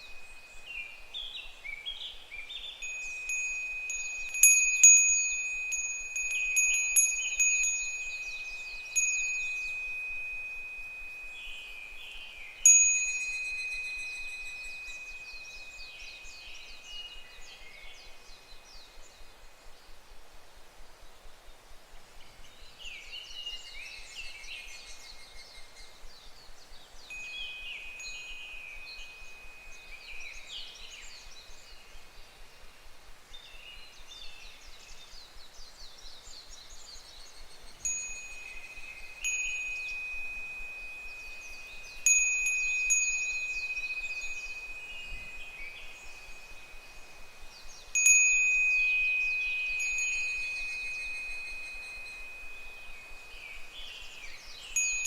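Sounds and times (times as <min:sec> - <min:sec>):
cicadas trilling: 0:00.0 - 0:17.6, 0:25.9 - 0:32.2, 0:36.4 - 0:55.0
wind chime ringing: 0:02.8 - 0:16.6, 0:27.1 - 0:30.7, 0:37.7 - 0:55.0.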